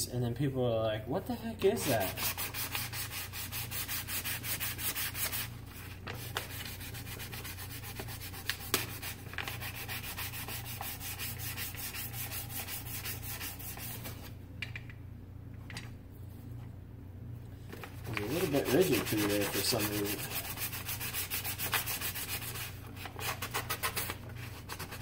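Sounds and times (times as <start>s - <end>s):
steady low hum: 0.0s - 25.0s
sandpaper sanding wood: 1.7s - 5.5s, 6.2s - 14.2s, 18.2s - 25.0s.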